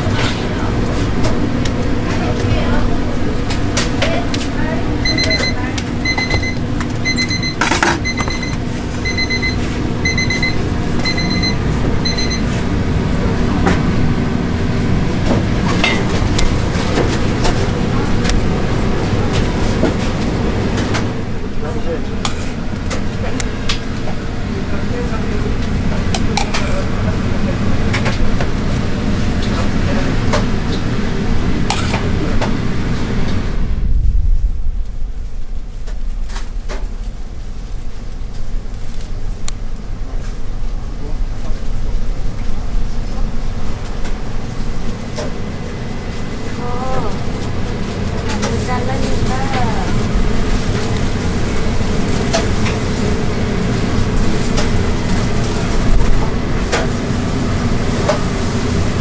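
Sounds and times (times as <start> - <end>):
steady low hum: 0.0 - 59.0
electronic alarm beeping: 5.0 - 12.6
low rumble: 32.5 - 44.9.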